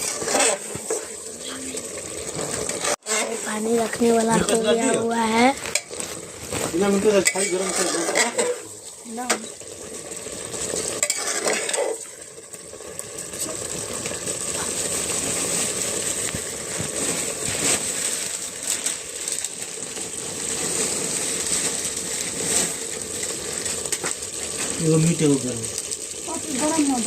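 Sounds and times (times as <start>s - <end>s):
spoon scraping a pan: 0.0s - 1.2s, 2.4s - 3.6s, 5.6s - 9.6s, 10.7s - 12.1s
meat sizzling in a pan: 0.0s - 27.0s.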